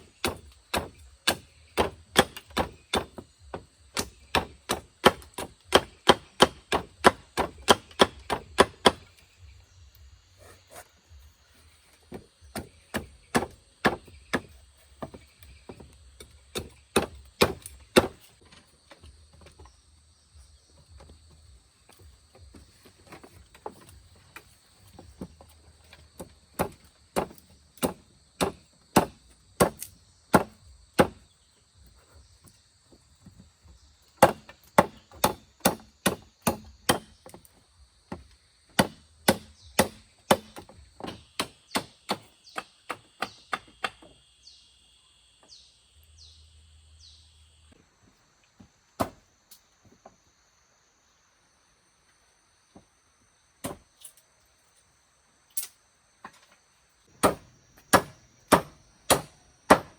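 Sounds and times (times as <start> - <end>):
tool chopping into wood: 0.1 - 9.1, 12.1 - 15.9, 16.5 - 18.2, 26.1 - 31.3, 34.2 - 37.4, 38.7 - 44.1, 49.0 - 49.2, 53.6 - 53.8, 57.2 - 59.9.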